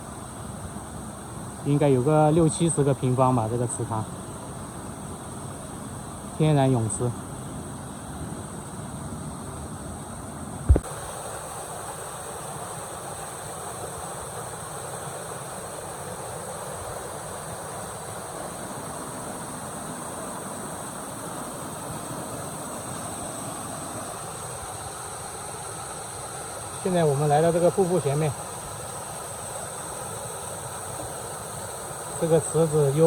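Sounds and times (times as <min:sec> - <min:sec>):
waterfall rushing into pool: 0:10.7 - 0:33.0.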